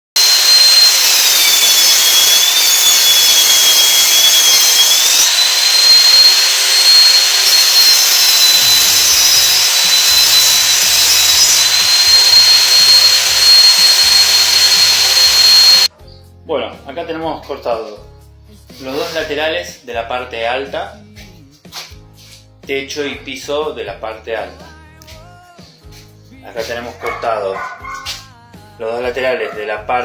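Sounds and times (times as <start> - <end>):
circular saw cutting board: 0.1 - 15.9.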